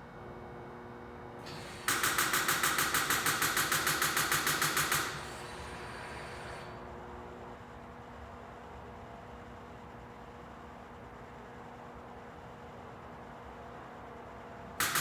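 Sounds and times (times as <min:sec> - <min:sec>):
starter solenoid clicking rapidly: 0:01.5 - 0:05.4.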